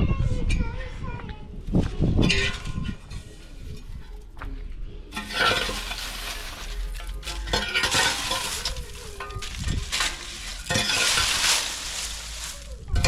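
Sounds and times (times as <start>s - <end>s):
wind buffeting microphone: 0.0s - 4.2s, 8.2s - 11.4s
dry debris crackling and rustling: 5.1s - 13.0s.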